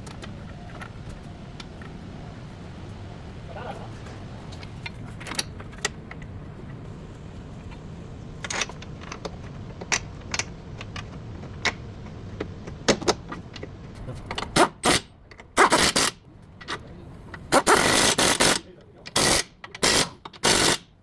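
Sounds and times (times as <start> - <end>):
metallic clicks and clanks: 14.3 - 20.9.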